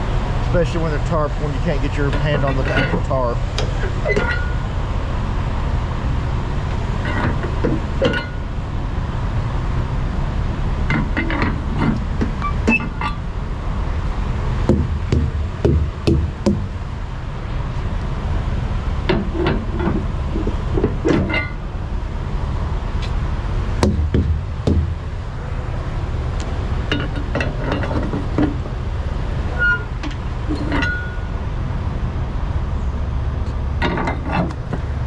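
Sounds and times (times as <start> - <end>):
low vehicle rumble: 0.0 - 35.0
brief high squeaks: 12.4 - 13.2, 29.5 - 31.3.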